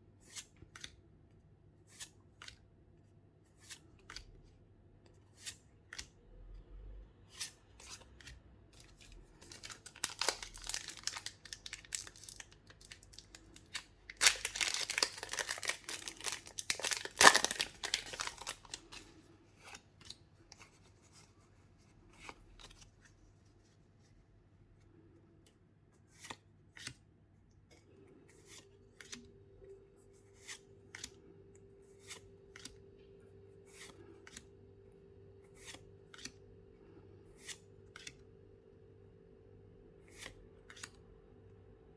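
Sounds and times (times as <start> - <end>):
packaging tearing and crinkling: 9.4 - 19.0.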